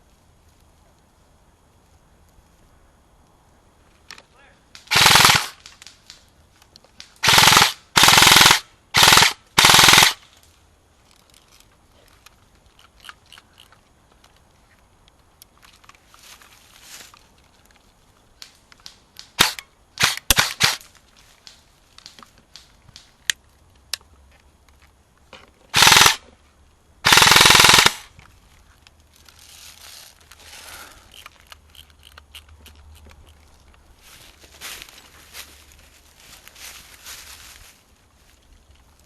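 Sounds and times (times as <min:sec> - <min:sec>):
airsoft gun rapid-fire bursts: 0:04.9 - 0:05.6, 0:07.2 - 0:10.2, 0:19.4 - 0:20.8, 0:25.8 - 0:26.2, 0:27.0 - 0:28.1
airsoft gun single shots: 0:19.4 - 0:20.8.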